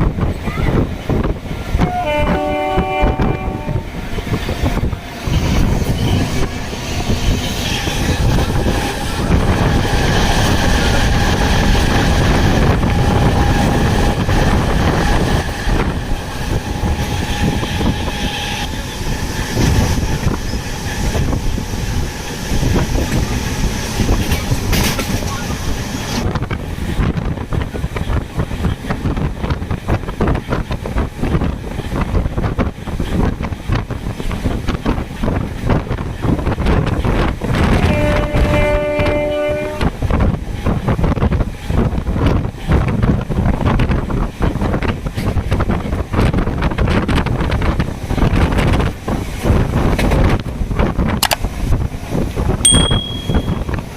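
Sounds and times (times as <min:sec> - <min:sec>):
train rumbling on rails: 0:00.0 - 0:53.9
wheels clickety-clack: 0:04.2 - 0:39.2, 0:39.8 - 0:52.6.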